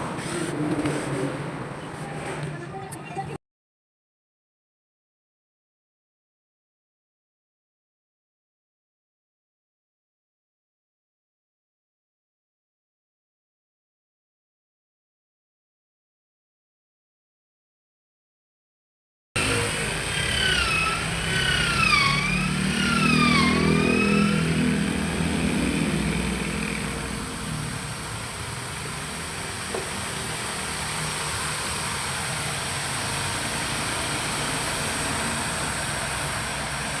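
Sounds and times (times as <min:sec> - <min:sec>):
electric drill motor whine: 0:19.4 - 0:37.0.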